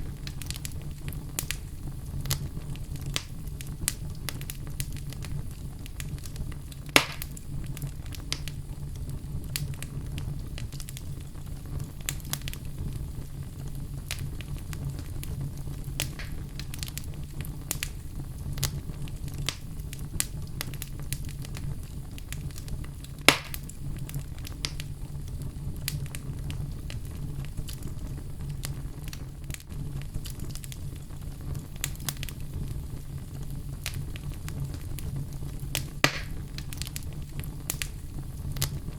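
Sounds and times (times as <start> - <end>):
fire roaring and crackling: 0.0 - 38.9
loud sharp pops: 6.9 - 7.4, 16.0 - 16.4, 23.2 - 23.7, 35.8 - 36.4.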